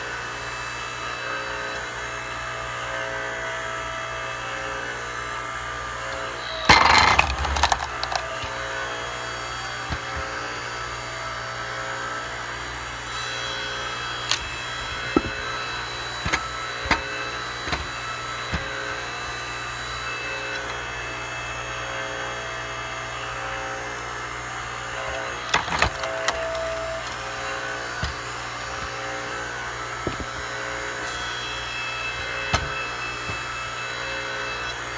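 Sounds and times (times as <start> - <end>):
hydraulic log splitter humming: 5.5 - 34.9
log splitting with loud crack: 6.4 - 8.8, 14.3 - 19.6, 25.0 - 31.4
wood knocking: 6.7 - 8.7, 9.8 - 10.4, 14.3 - 19.5, 25.0 - 34.3.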